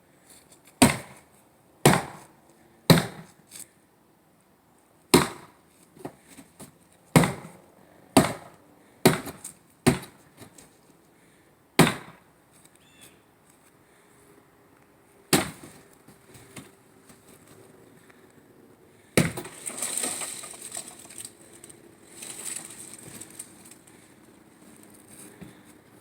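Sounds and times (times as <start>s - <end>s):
hard blows smashing box: 19.2s - 21.6s
box crunching and crackling: 19.4s - 24.0s.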